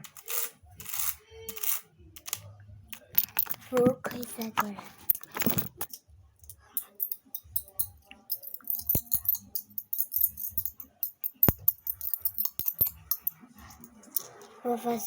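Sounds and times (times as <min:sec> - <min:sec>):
small hard objects rattling: 0:07.0 - 0:14.4.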